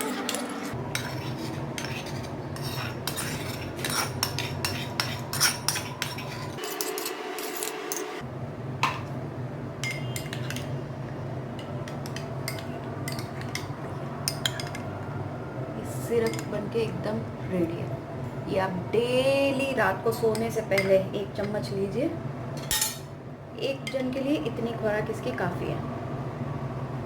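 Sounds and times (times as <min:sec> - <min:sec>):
spoon scraping metal pan: 0:00.0 - 0:08.2.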